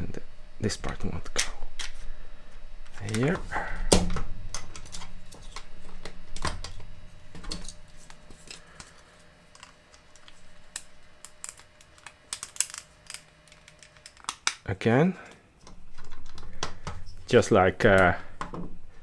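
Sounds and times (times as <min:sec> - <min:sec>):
plastic parts clicking: 0:07.4 - 0:14.7.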